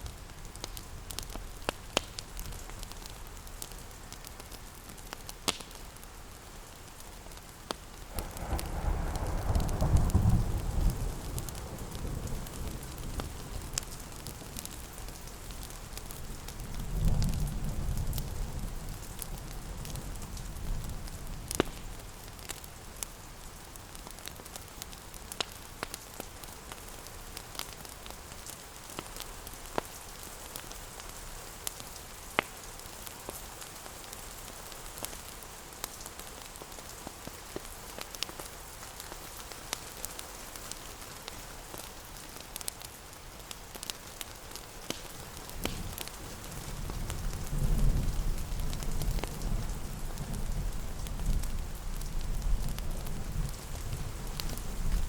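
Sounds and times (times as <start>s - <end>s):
fireplace crackling: 0.0s - 9.4s, 18.9s - 55.0s
steady rain: 0.0s - 55.0s
thunder rumble: 8.1s - 13.8s.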